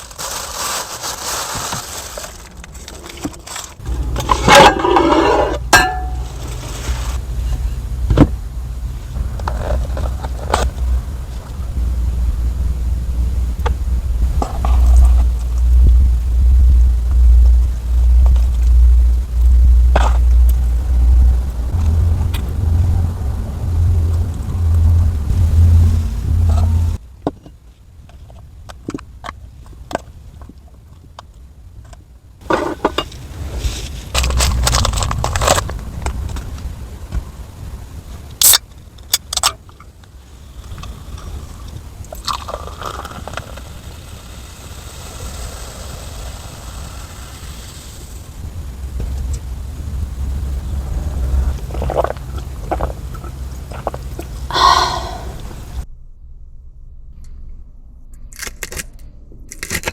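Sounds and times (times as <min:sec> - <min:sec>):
low steady hum: 0:02.0 - 0:44.7, 0:47.9 - 0:59.9
low rumble: 0:03.8 - 0:27.3, 0:48.2 - 0:59.6
small objects clicking: 0:58.2 - 0:59.9.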